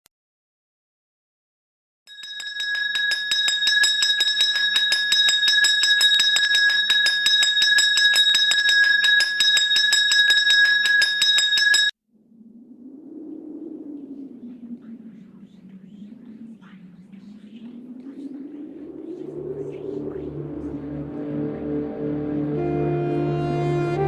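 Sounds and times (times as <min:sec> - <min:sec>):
bell ringing rapidly: 0:02.1 - 0:12.0.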